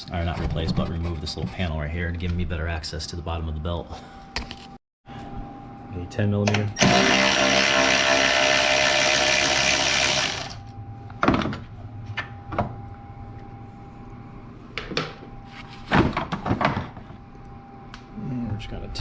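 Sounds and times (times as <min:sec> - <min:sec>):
power tool motor whine: 0:06.8 - 0:10.7.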